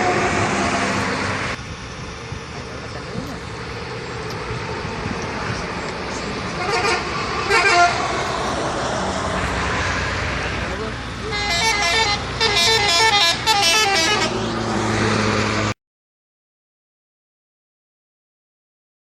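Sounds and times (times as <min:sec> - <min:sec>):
bus multi-tone horn: 0:00.0 - 0:01.2, 0:06.5 - 0:08.3, 0:11.2 - 0:15.0
highway traffic: 0:00.0 - 0:15.8.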